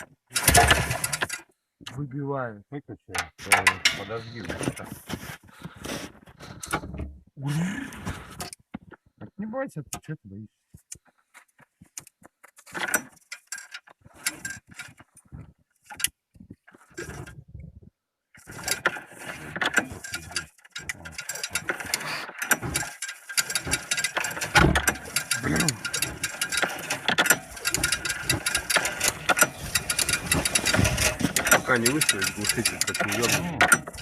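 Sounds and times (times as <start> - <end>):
recoil starter ratcheting: 0.0 - 1.5, 12.0 - 15.1, 18.4 - 34.0
small engine turning over: 21.2 - 34.0.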